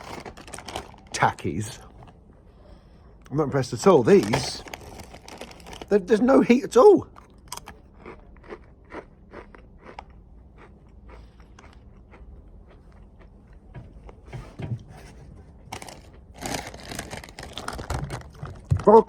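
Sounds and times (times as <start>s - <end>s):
chips being chewed: 0.0s - 1.2s, 4.1s - 6.0s, 7.1s - 14.2s, 15.7s - 19.0s.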